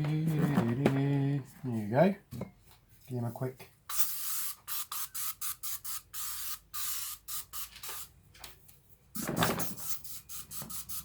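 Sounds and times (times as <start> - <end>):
spray polish hissing: 3.9 - 8.1, 9.2 - 11.0.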